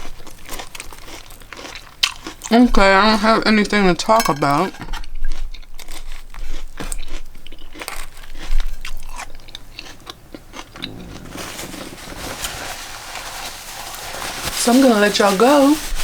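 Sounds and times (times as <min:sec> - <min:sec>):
chewing: 0:00.0 - 0:03.3, 0:04.6 - 0:12.3
lettuce crunching: 0:00.0 - 0:15.8.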